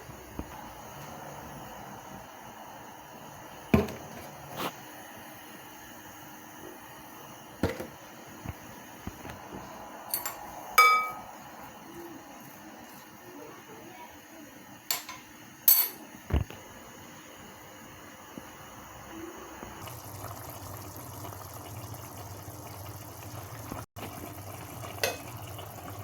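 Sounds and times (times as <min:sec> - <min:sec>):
utensils knocking against cookware: 0:10.1 - 0:11.3, 0:14.9 - 0:16.0.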